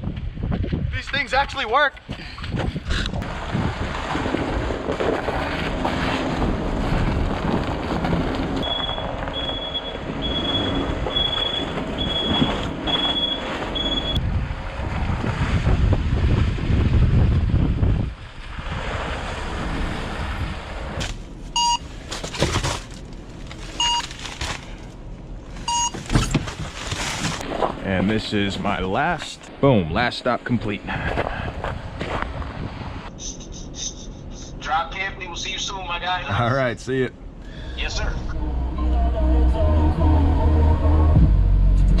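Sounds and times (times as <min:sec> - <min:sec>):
wind noise on microphone: 0:00.0 - 0:01.3, 0:02.0 - 0:21.0, 0:30.9 - 0:33.2
van engine rumble: 0:03.2 - 0:14.9, 0:20.1 - 0:29.1, 0:37.2 - 0:42.0
short beeps: 0:08.6 - 0:14.2, 0:21.6 - 0:21.9, 0:25.7 - 0:26.0, 0:33.2 - 0:34.5.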